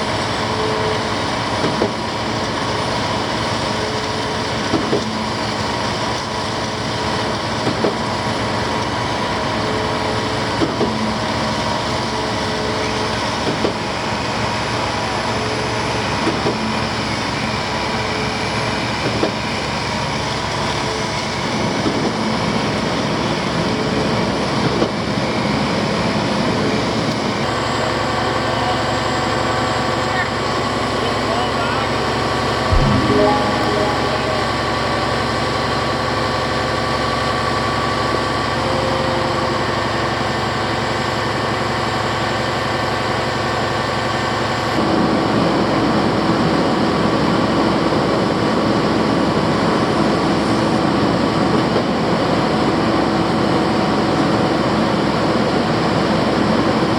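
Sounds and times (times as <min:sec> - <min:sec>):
concrete pump truck running: 0:00.0 - 0:08.5.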